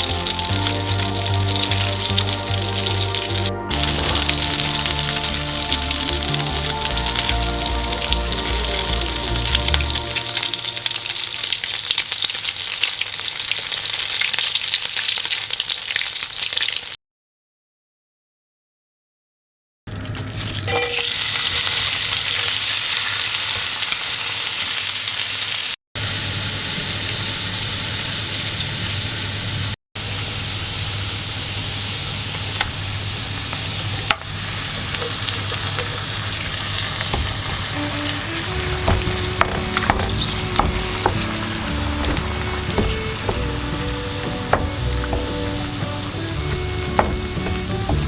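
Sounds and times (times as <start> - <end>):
food sizzling in a frying pan: 0.0 - 17.0, 20.1 - 48.0
utensil knocking on a pan: 37.1 - 48.0.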